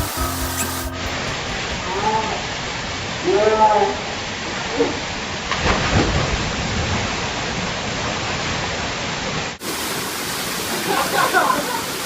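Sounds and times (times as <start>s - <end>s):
waterfall rushing: 0.0s - 5.4s, 9.6s - 12.0s.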